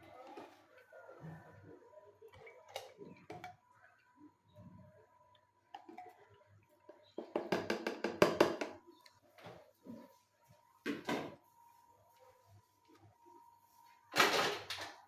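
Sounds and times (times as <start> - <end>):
utensils and dishes knocking: 7.2 - 8.8.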